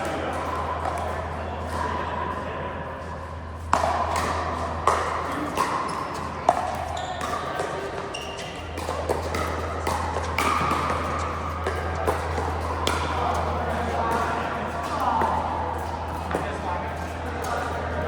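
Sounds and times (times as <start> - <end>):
steady low hum: 0.0 - 18.0
paddles striking plastic ball: 8.6 - 13.5.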